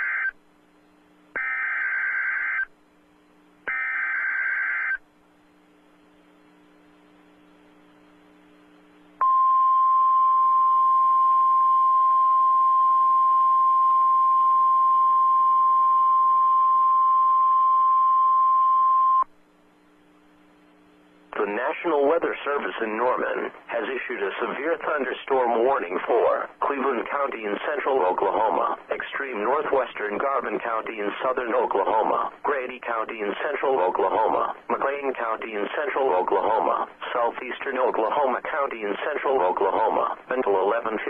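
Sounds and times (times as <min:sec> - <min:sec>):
harsh buzzing data bursts: 0:01.3 - 0:02.7, 0:03.6 - 0:05.0
steady warning alarm tone: 0:01.4 - 0:02.7, 0:03.7 - 0:05.0.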